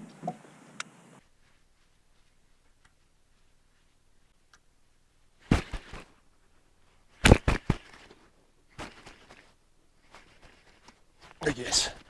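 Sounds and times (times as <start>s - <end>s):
hooked fish thrashing and splashing: 5.4s - 6.3s, 7.2s - 12.0s.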